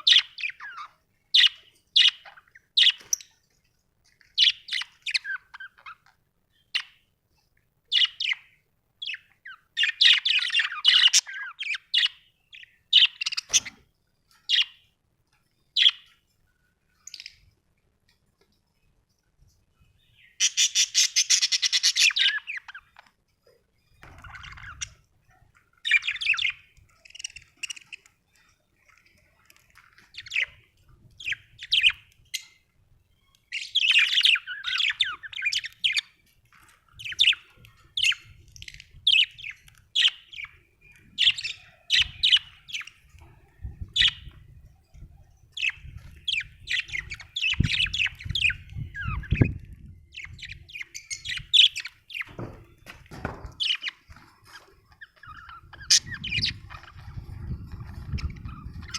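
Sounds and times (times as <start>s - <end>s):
budgerigars chirping and chattering: 0.0s - 3.5s, 4.3s - 7.1s, 7.9s - 14.9s, 15.8s - 16.2s, 17.0s - 17.6s, 20.0s - 23.2s, 23.8s - 58.9s.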